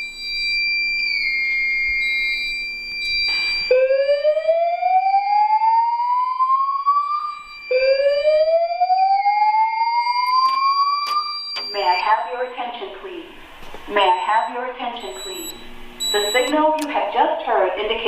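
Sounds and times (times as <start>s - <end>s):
steady high tone: 5.9s - 16.6s.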